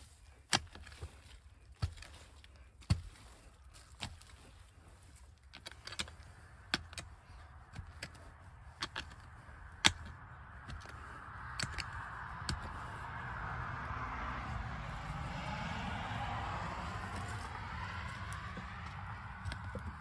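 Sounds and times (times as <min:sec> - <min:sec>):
shovel digging in soil: 0:00.0 - 0:13.1.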